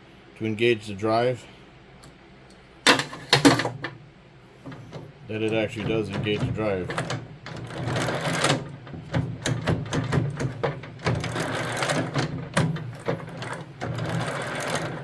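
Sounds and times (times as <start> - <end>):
snowblower drive humming and rattling: 7.3 - 15.0.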